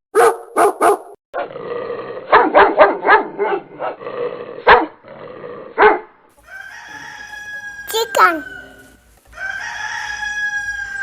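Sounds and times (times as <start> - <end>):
dog barking: 0.2 - 1.2, 2.3 - 4.0, 4.6 - 5.0, 5.8 - 6.2.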